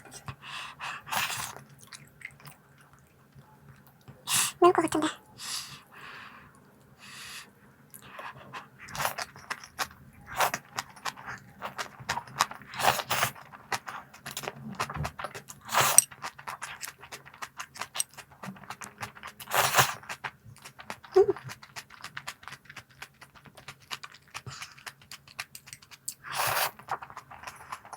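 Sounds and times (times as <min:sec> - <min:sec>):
crunchy snacks being eaten: 0:08.9 - 0:27.9.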